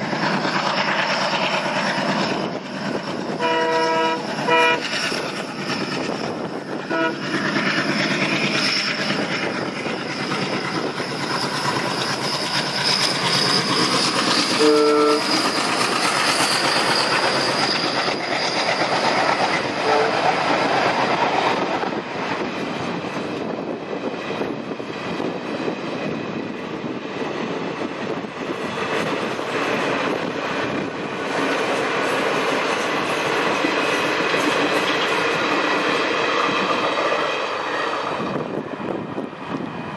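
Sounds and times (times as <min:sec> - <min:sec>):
train wheels clattering: 0:00.0 - 0:38.6
train horn blast: 0:03.4 - 0:04.9, 0:06.9 - 0:07.3, 0:14.6 - 0:15.4, 0:19.8 - 0:20.3.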